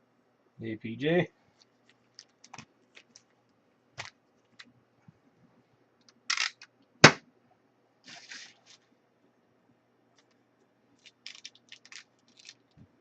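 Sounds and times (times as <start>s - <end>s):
loud sharp knock: 7.0s - 7.2s
cardboard and foil rustling: 8.1s - 8.9s, 11.0s - 12.8s.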